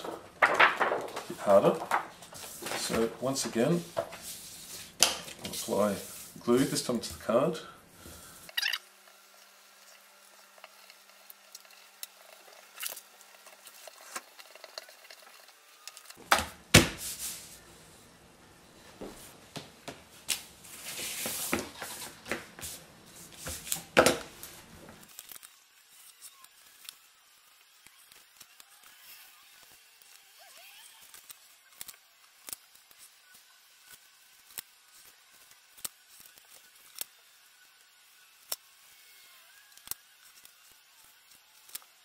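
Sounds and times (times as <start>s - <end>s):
paper clicks and taps: 0.0s - 2.8s
paper rubbing and rustling: 0.0s - 6.9s, 17.0s - 17.6s, 20.3s - 25.2s.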